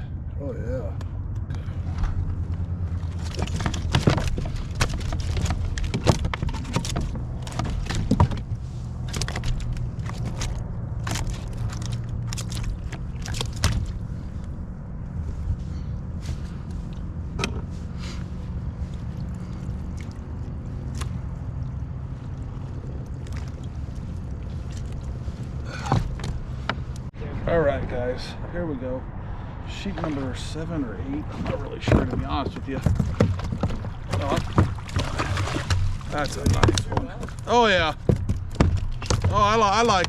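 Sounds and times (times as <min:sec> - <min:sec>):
steady low hum: 0:00.0 - 0:40.0
knocks and clicks of gear: 0:01.0 - 0:14.5, 0:16.4 - 0:18.3, 0:25.7 - 0:27.1, 0:31.4 - 0:40.0
water sounds: 0:01.5 - 0:27.2, 0:29.2 - 0:40.0.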